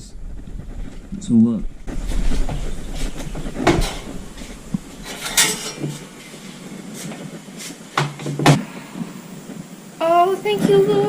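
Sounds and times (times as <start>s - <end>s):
washing machine low hum: 1.9s - 8.6s
clicks and clunks: 2.3s - 6.2s.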